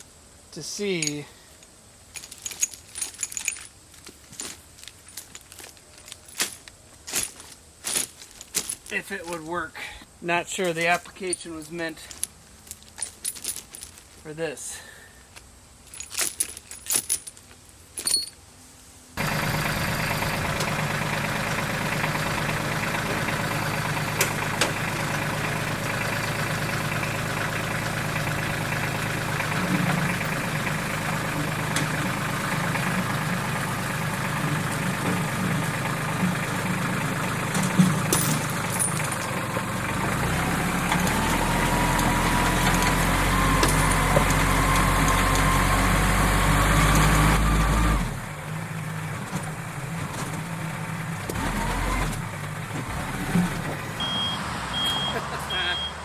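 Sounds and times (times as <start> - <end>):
skid steer engine running: 19.2 - 56.0.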